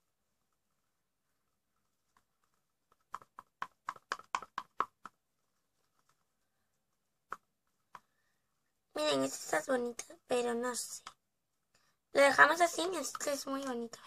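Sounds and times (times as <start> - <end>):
utensil tapping against bowl: 3.1 - 5.2.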